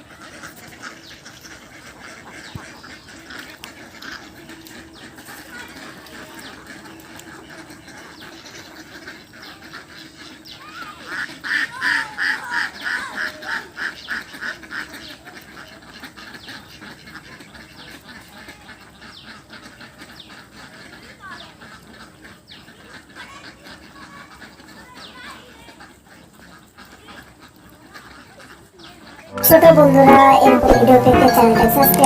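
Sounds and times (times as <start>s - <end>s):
waterfowl calling: 0.0s - 30.0s.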